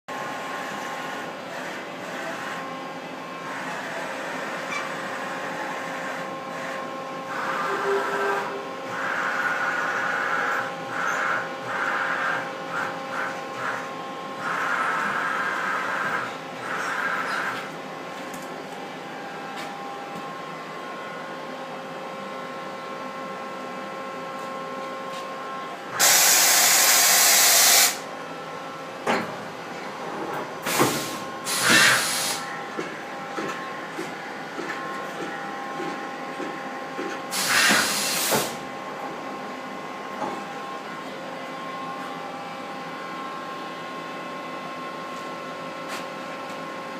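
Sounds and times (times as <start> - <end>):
machine hum with whining tones: 0.1 - 46.9
air hiss bursts: 26.0 - 28.0, 30.7 - 32.4, 37.3 - 38.6.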